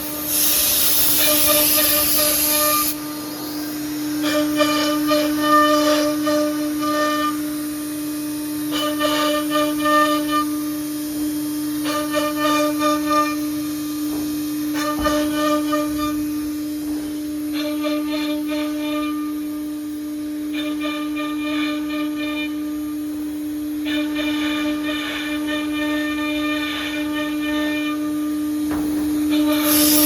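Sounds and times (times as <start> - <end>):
router spindle whining: 0.0 - 8.7, 28.4 - 30.0.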